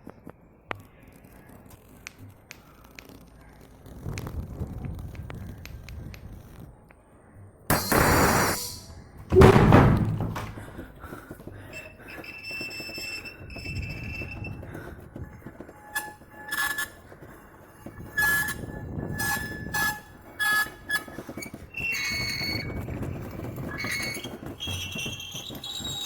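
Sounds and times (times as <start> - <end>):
high-pitched squeaks and squeals: 7.7 - 9.6, 11.7 - 26.0.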